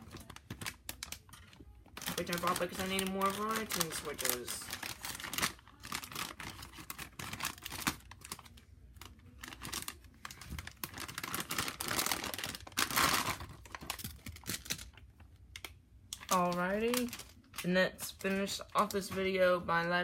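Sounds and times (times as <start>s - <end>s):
plastic and card crinkling: 0.0s - 19.8s.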